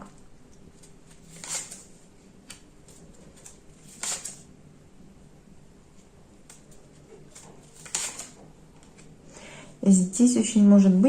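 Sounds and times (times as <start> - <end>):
cards swishing: 1.1 - 4.4, 6.5 - 9.0.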